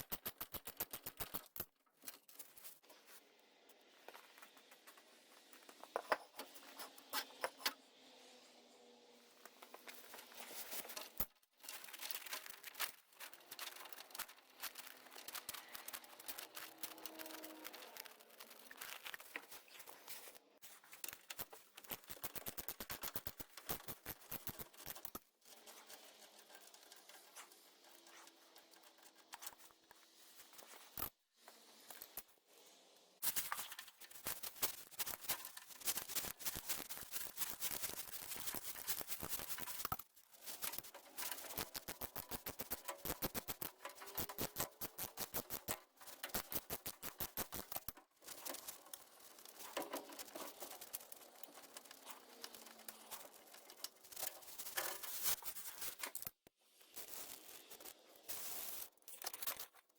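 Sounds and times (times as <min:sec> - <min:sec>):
quick clicks and rattles: 0:00.0 - 0:02.7, 0:09.7 - 0:29.8, 0:33.2 - 0:56.5.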